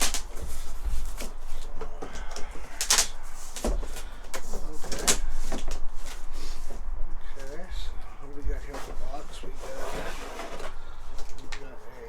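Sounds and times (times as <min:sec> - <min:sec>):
cardboard box scraping and knocking: 0:08.6 - 0:11.4.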